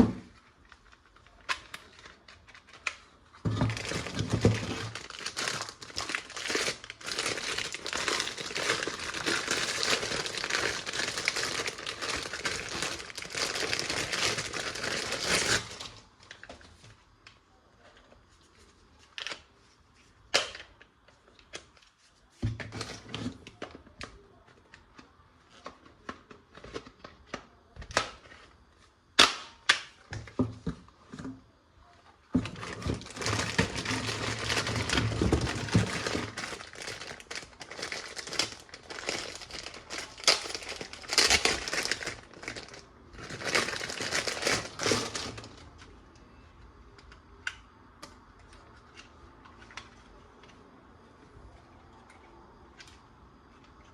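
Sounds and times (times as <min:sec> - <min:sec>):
packaging crinkling and rustling: 0:00.0 - 0:17.0, 0:18.0 - 0:28.7, 0:32.3 - 0:46.0.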